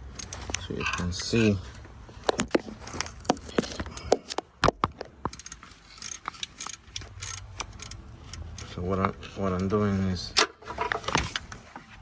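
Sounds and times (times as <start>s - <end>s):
metal tools clicking and clinking: 0.1s - 1.6s, 5.3s - 9.0s.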